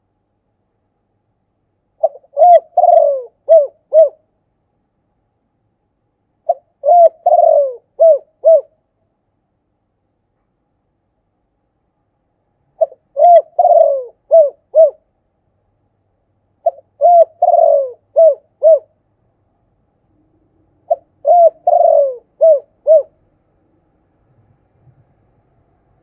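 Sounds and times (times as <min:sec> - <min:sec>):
dove cooing: 0:02.0 - 0:04.2, 0:06.5 - 0:08.7, 0:12.8 - 0:15.0, 0:16.6 - 0:18.9, 0:20.8 - 0:23.2.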